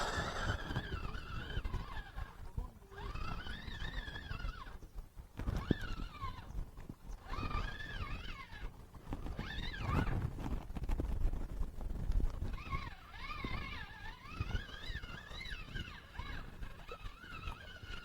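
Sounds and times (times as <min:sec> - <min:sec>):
high wavering whine: 0:00.0 - 0:01.0
wind buffeting microphone: 0:00.0 - 0:02.0.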